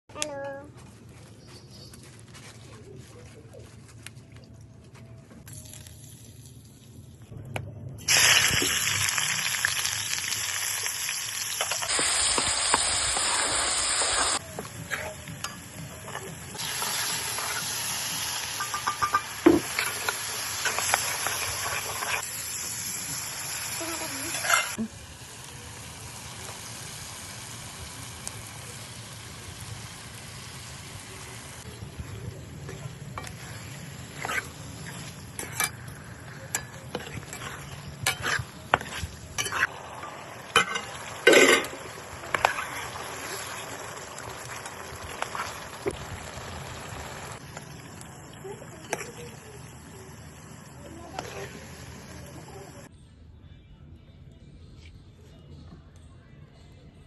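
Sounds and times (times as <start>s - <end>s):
meat sizzling in a pan: 8.1s - 35.6s, 36.5s - 52.9s.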